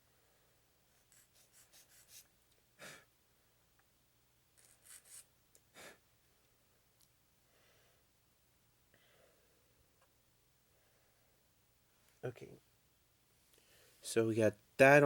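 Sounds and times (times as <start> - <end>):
scratchy strokes on plastic parts: 0.9 - 2.3, 4.6 - 5.3.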